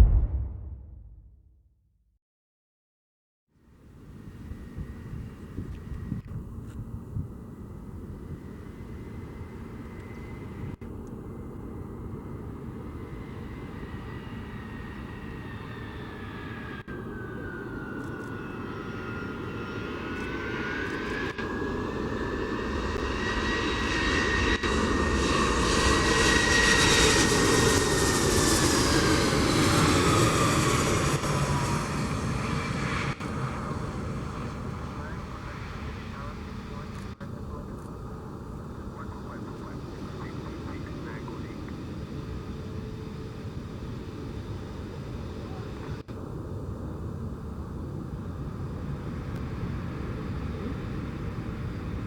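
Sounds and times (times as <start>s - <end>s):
jet plane roar with high whine: 3.6s - 52.0s.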